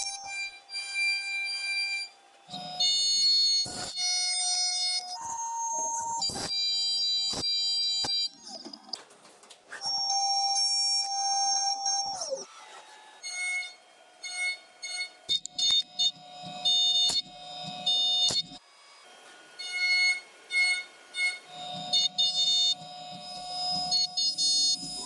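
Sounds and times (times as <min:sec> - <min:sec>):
milling machine cutter whine: 0:10.9 - 0:25.0.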